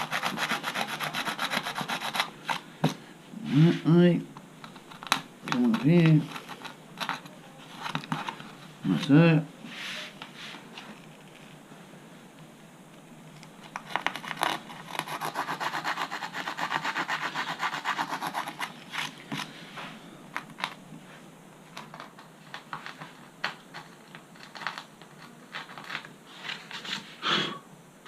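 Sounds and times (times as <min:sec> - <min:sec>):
emery tape rubbing: 0:00.0 - 0:02.7, 0:13.7 - 0:19.9.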